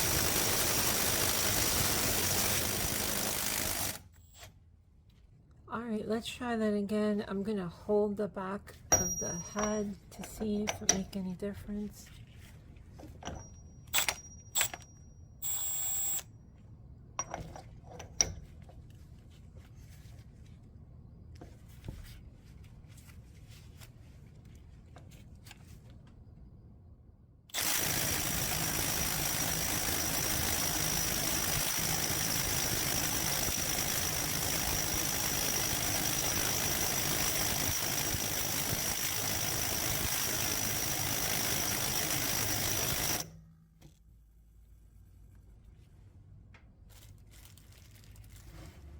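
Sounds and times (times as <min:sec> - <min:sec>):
impact wrench hammering: 0:00.0 - 0:04.0, 0:27.6 - 0:43.3.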